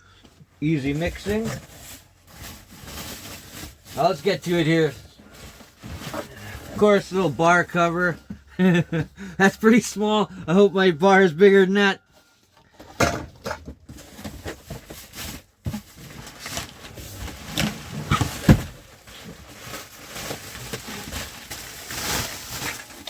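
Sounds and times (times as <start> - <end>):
packaging rustling: 1.1 - 6.8, 13.9 - 23.0.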